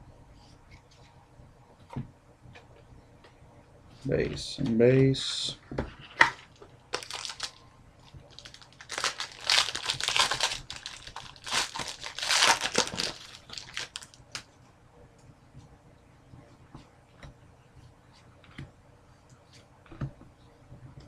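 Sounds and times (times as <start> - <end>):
packaging crinkling: 6.5 - 7.6, 8.2 - 14.4.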